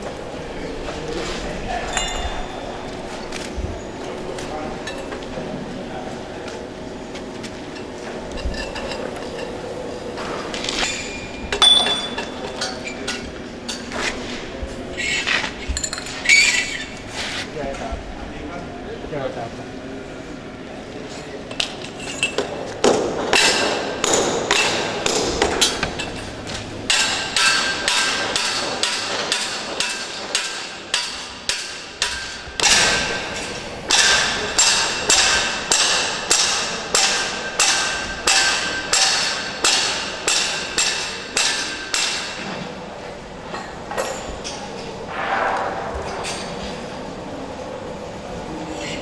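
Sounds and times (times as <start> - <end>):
hammer blows ringing: 1.7 - 5.2, 10.2 - 14.1, 22.2 - 42.9.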